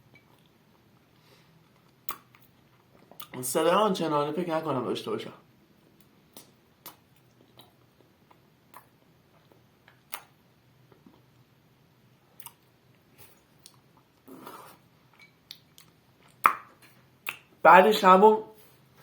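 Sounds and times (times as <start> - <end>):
mouth chewing clicks: 1.8 - 3.4, 6.0 - 11.2, 12.4 - 12.7.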